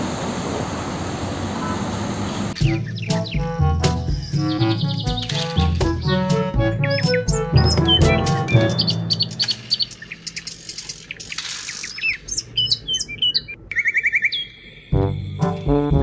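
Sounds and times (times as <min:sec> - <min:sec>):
background music: 0:02.6 - 0:10.5, 0:14.9 - 0:16.0
birds chirping: 0:02.6 - 0:16.0.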